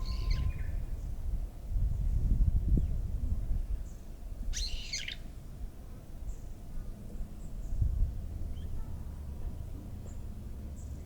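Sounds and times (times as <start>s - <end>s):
low outdoor rumble: 5.3s - 11.0s.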